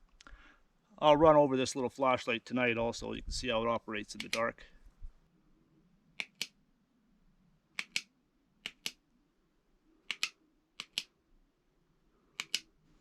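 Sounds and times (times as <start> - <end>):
flashlight switch clicking: 6.2 - 6.6, 7.8 - 9.0, 10.1 - 11.1, 12.4 - 12.7.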